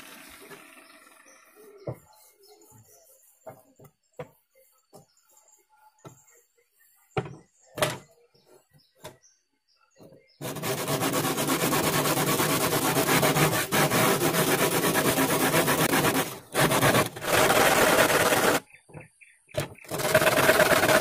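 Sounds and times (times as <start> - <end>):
file rasping on saw teeth: 10.4 - 18.6, 19.9 - 21.0.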